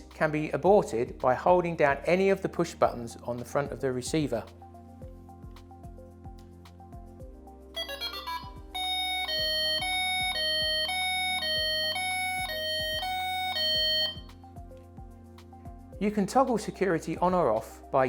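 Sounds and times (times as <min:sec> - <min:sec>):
falling electronic beeps: 0:07.8 - 0:14.3
two-tone electronic alarm warble: 0:07.8 - 0:14.3.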